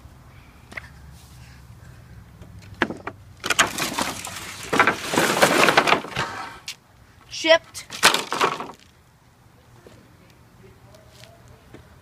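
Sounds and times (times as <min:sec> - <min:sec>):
wooden boards knocking and clattering: 0:02.8 - 0:06.6, 0:07.9 - 0:08.9.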